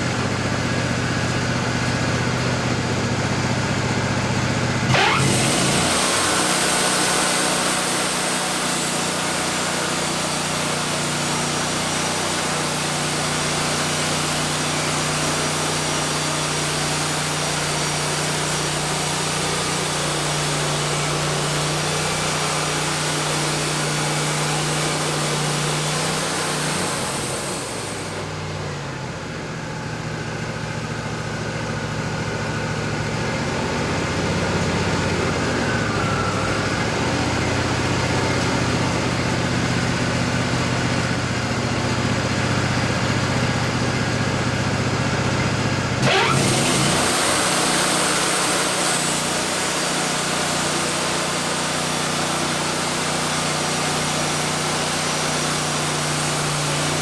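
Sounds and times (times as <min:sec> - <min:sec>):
sawmill engine droning: 0:00.0 - 0:57.0
band saw blade cutting log: 0:04.9 - 0:28.3, 0:46.0 - 0:57.0.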